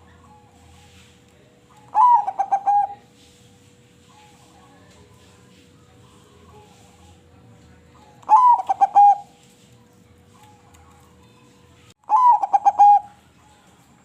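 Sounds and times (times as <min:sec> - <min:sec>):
dove cooing: 0:01.7 - 0:03.1, 0:08.2 - 0:09.4, 0:12.0 - 0:13.2
faint coos from other doves: 0:01.8 - 0:03.2, 0:08.2 - 0:09.4, 0:12.1 - 0:13.3.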